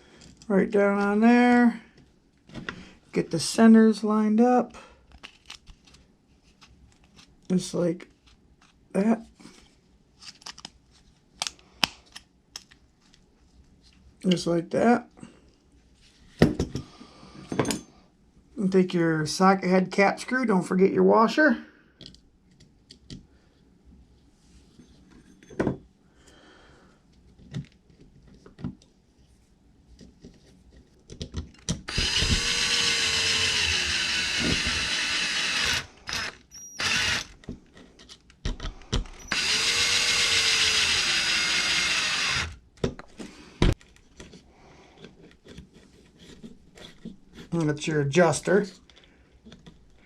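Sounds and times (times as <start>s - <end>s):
power driver spinning screw: 31.8s - 37.4s, 39.0s - 42.6s.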